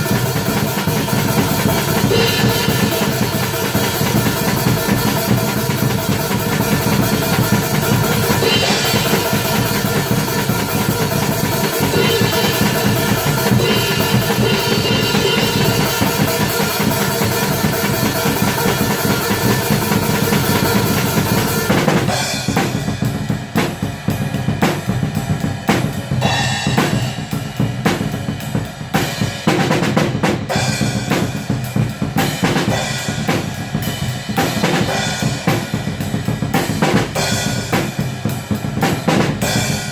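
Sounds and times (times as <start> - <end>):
black metal music: 0.0 - 29.5
drum hits: 0.0 - 39.9.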